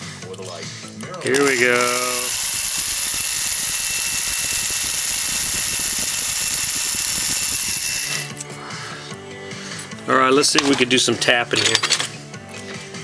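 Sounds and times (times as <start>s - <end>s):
electric drill whining: 1.3s - 9.1s.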